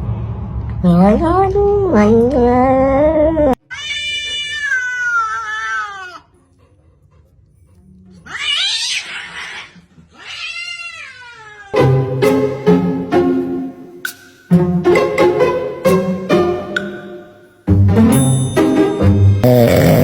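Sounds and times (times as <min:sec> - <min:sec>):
cat yowling: 0:03.6 - 0:06.3, 0:08.2 - 0:11.8.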